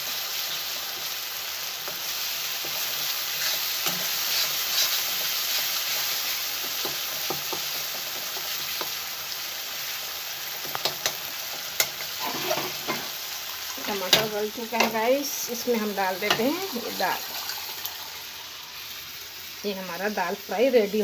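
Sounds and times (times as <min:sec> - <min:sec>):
tomatoes sizzling in oil: 0:00.0 - 0:21.0
spoon scraping and tapping pan: 0:11.8 - 0:13.1, 0:15.8 - 0:16.5.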